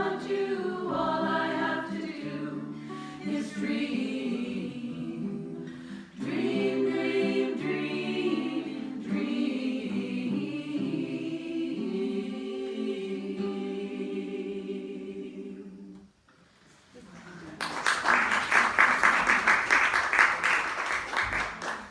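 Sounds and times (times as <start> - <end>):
a cappella group singing: 0.0 - 16.1
singers breathing: 2.8 - 3.3, 5.6 - 6.2.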